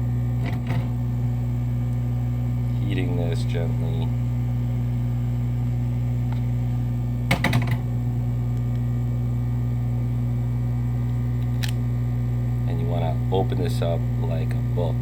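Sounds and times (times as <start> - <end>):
low electrical hum: 0.0 - 15.0
sharp clicks and knocks: 0.4 - 1.0, 7.3 - 7.9.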